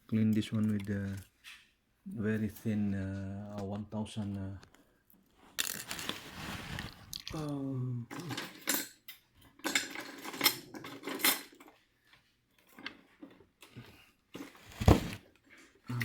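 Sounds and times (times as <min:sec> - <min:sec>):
small metal tools clinking: 0:08.1 - 0:11.8.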